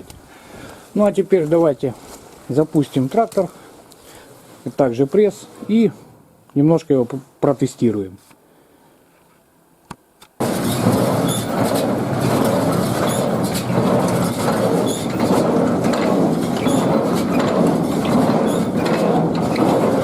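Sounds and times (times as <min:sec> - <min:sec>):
baler mechanical clatter: 0:10.4 - 0:20.0.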